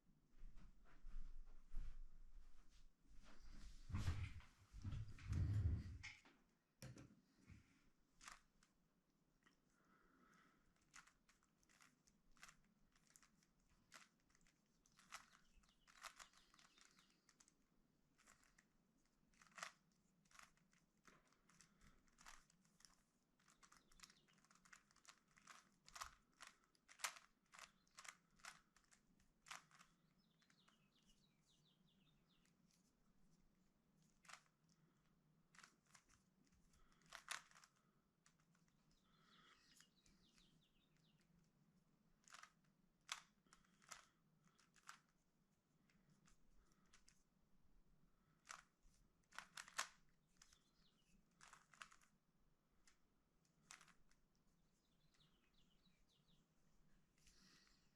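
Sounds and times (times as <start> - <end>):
puzzle cube layers clicking: 10.8 - 17.5, 18.2 - 18.6, 19.3 - 30.8, 35.5 - 36.2, 36.8 - 38.6, 42.2 - 45.1, 49.3 - 52.1, 53.6 - 54.0.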